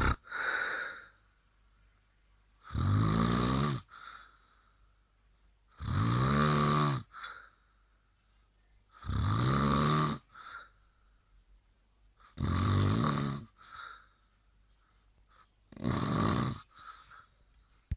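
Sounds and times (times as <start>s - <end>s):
person snoring: 0.0s - 1.1s, 2.6s - 4.3s, 5.8s - 7.4s, 9.0s - 10.7s, 12.3s - 14.0s, 15.7s - 17.1s
soft breath: 0.2s - 1.3s, 3.9s - 5.5s, 13.5s - 15.6s, 16.6s - 17.9s.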